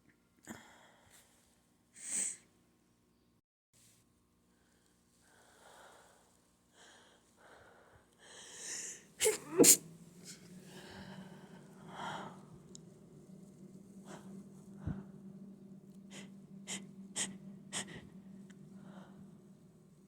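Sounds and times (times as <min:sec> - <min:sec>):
person sneezing: 0:09.2 - 0:09.8
person sniffing: 0:09.2 - 0:09.8.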